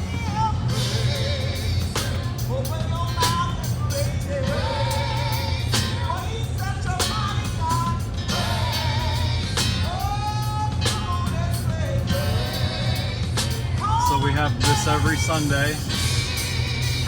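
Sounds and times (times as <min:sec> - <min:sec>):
guitar: 0:00.0 - 0:17.0
heavy bass: 0:00.0 - 0:17.0.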